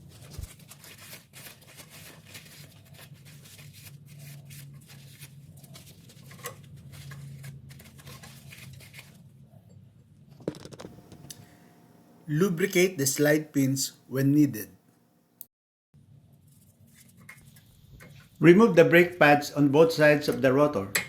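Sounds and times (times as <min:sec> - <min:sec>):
low steady hum: 0:10.9 - 0:15.4.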